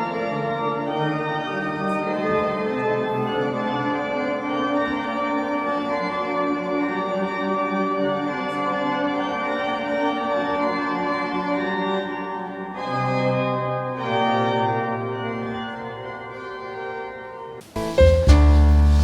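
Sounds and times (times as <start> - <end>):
organ chords: 17.6 - 19.0.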